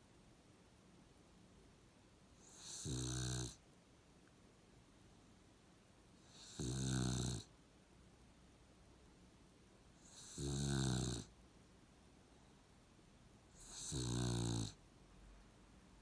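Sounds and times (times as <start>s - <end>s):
dog snoring: 2.4s - 3.6s, 6.2s - 7.5s, 10.0s - 11.3s, 13.5s - 14.8s.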